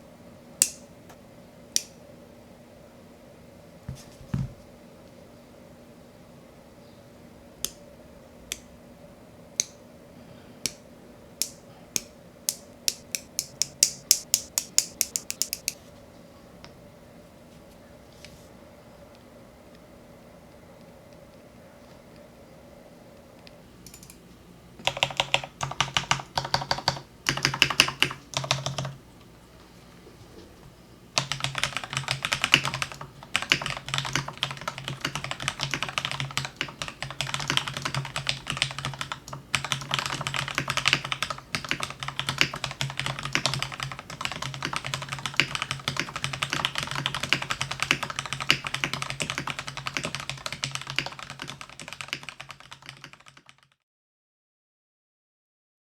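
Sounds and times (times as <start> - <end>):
typing on mechanical keyboard: 12.9 - 15.8, 24.8 - 29.0, 31.2 - 53.8.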